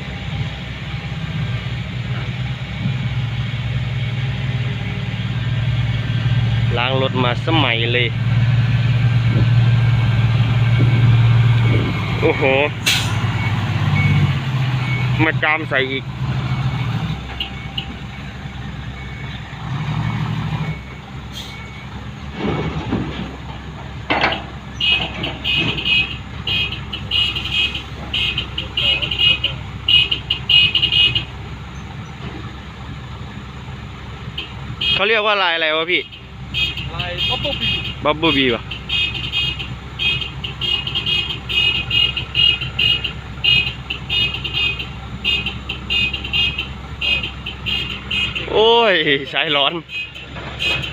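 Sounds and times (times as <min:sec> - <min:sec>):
dump truck engines running: 0:00.0 - 0:50.9
reversing beeper: 0:09.7 - 0:22.0.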